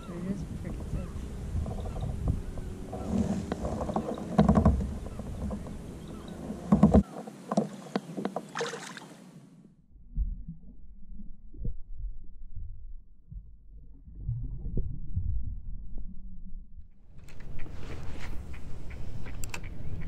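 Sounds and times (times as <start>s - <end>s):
clicks and knocks on kayak: 1.6s - 5.8s, 6.4s - 8.6s.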